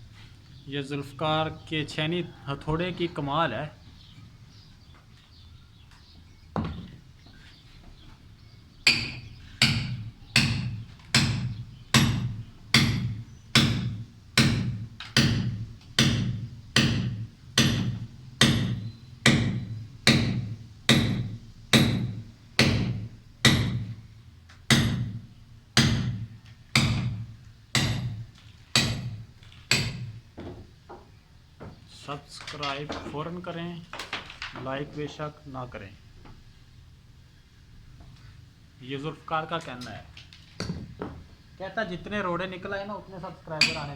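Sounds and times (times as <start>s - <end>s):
hammer striking steel chisel: 43.6s - 43.9s.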